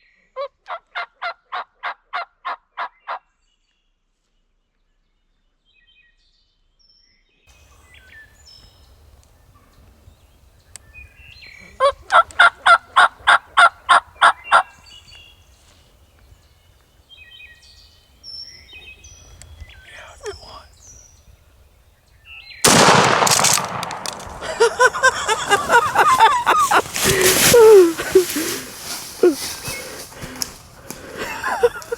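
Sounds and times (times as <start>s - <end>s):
turkey yelps: 0.7s - 2.9s, 11.0s - 16.4s, 24.4s - 28.5s
songbird chirps: 7.5s - 31.9s
shotgun blast: 22.6s - 24.6s
loud commotion: 22.6s - 31.9s.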